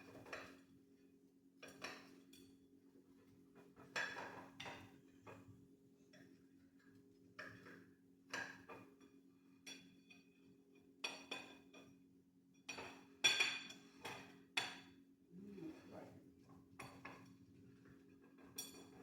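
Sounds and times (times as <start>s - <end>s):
kitchenware clinking against dishes: 12.6s - 14.9s.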